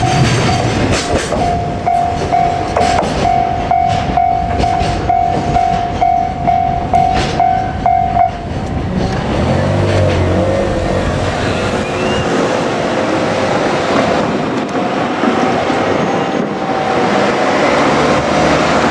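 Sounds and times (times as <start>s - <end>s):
train wheels clicking over rail joints: 0.0s - 18.9s
level crossing alarm dinging: 1.4s - 8.5s.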